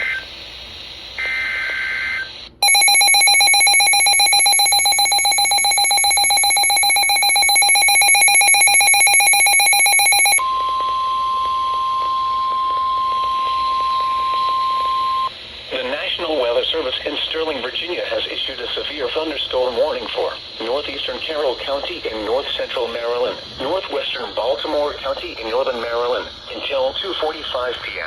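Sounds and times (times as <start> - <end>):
harsh two-tone alarm: 2.6 - 15.3
steady high alarm tone: 2.6 - 15.3.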